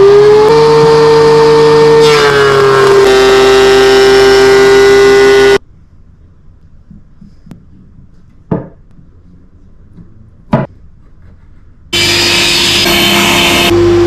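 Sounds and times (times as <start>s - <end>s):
electric power tool whining: 0.0s - 5.6s, 12.0s - 14.0s.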